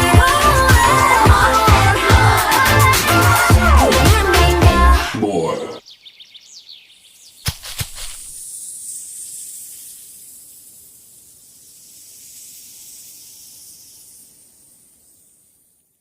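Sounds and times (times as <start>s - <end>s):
high-pitched hiss: 7.4s - 16.0s.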